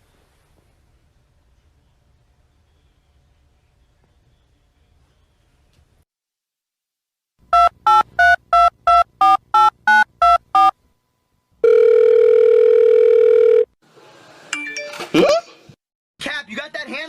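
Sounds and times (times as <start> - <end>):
steady dial tone: 7.5 - 10.7, 11.6 - 13.8
telephone keypad touch tones: 7.5 - 10.7.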